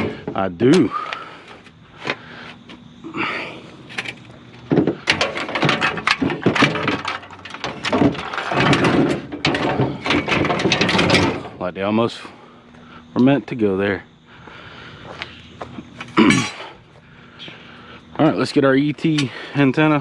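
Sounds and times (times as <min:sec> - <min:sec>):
metal bed frames clanking: 0:00.0 - 0:00.9, 0:03.9 - 0:11.8.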